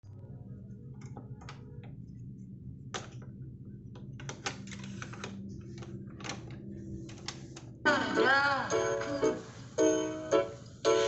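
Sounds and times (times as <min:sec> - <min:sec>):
low steady hum: 0:00.0 - 0:11.0
plastic clicks and clacks: 0:04.0 - 0:07.7.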